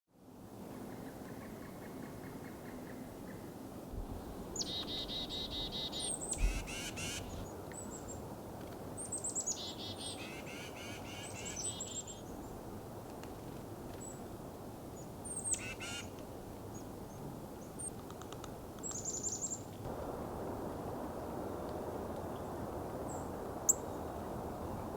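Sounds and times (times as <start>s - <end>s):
songbirds singing: 4.6s - 8.2s, 9.0s - 12.6s, 15.0s - 16.1s, 18.8s - 19.7s
low rushing background: 19.9s - 24.9s.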